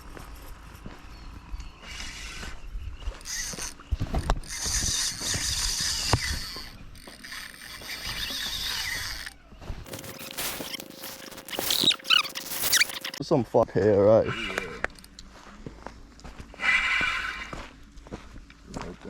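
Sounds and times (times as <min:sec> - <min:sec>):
fishing reel ratchet clicking: 0:03.2 - 0:03.8, 0:04.4 - 0:09.4.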